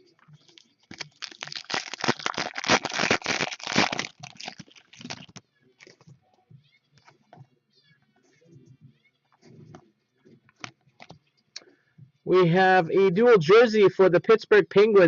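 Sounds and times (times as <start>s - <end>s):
wrapper tearing and crinkling: 0.4s - 5.9s.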